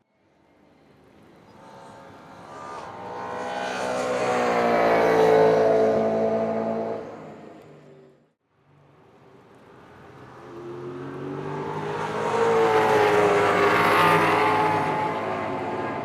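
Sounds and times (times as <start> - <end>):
racing car passing at speed: 1.4 - 8.2, 9.8 - 16.0.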